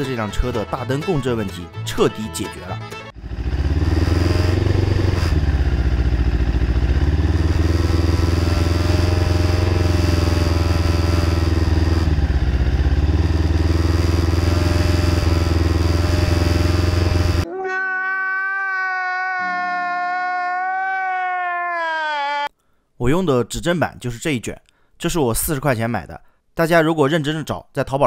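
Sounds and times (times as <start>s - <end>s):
motorcycle engine running: 3.2s - 17.5s.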